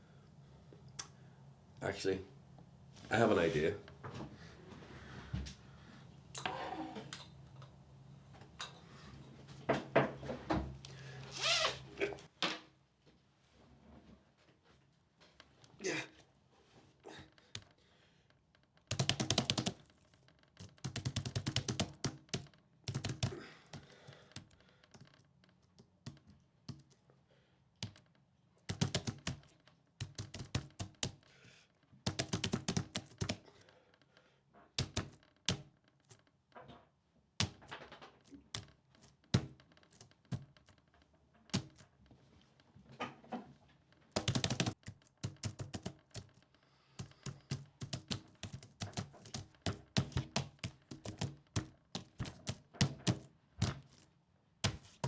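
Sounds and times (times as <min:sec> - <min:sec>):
keyboard typing: 0:18.9 - 0:19.8, 0:20.6 - 0:23.8, 0:28.7 - 0:31.2, 0:32.1 - 0:33.4, 0:44.2 - 0:46.4, 0:47.0 - 0:53.3.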